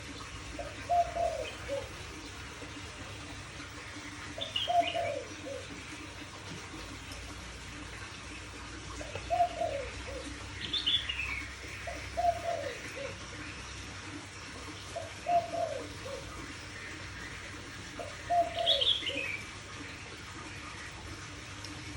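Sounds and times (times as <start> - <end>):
dove cooing: 0.5 - 3.3, 4.0 - 7.0, 8.9 - 21.2
bird chirp: 18.0 - 19.4.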